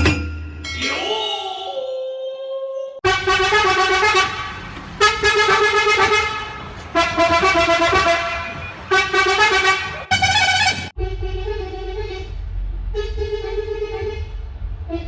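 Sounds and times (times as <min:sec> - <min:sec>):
truck horn blasts: 0:03.0 - 0:15.0.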